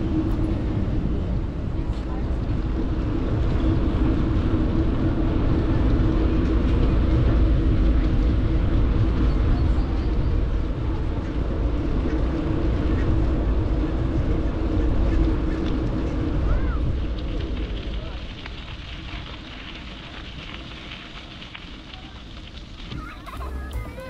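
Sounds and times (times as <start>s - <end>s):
metro train rumbling: 0.0s - 18.1s, 23.0s - 24.0s.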